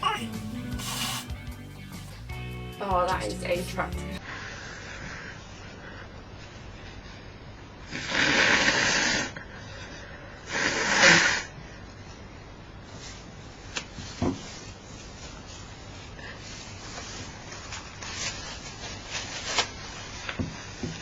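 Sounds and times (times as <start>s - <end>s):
person blowing nose: 0.0s - 2.2s, 7.9s - 9.4s.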